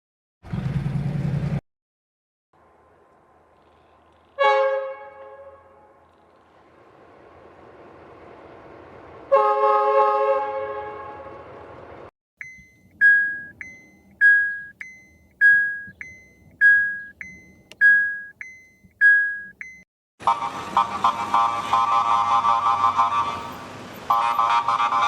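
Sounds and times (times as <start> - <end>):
car horn blast: 4.4 - 5.9
electronic two-note beep: 12.4 - 19.8.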